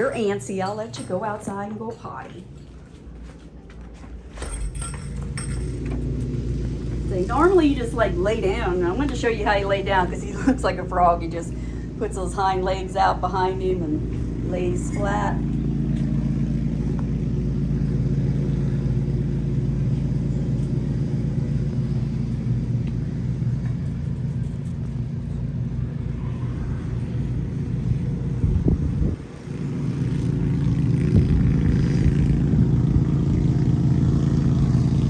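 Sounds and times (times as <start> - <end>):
lawnmower engine running: 0.0 - 35.0.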